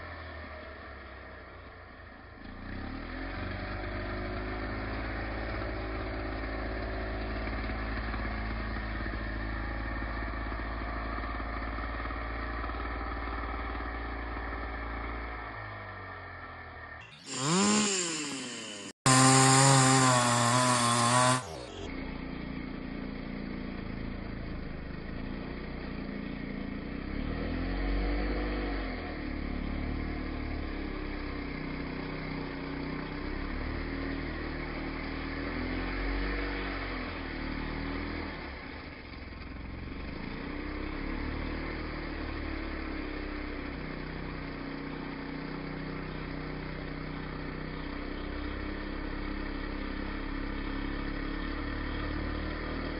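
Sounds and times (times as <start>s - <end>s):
chainsaw cutting: 17.0s - 21.9s.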